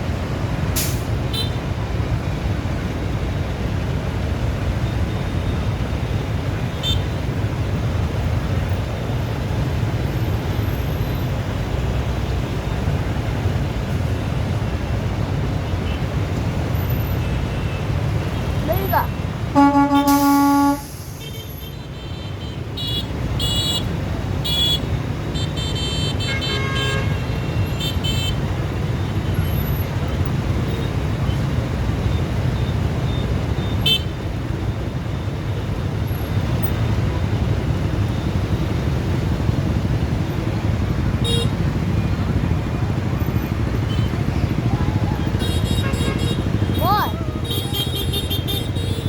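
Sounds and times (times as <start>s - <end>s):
traffic rumble: 0.0s - 49.0s
vehicle horn honking: 19.5s - 24.8s, 25.4s - 28.4s, 45.4s - 46.8s, 47.4s - 49.0s.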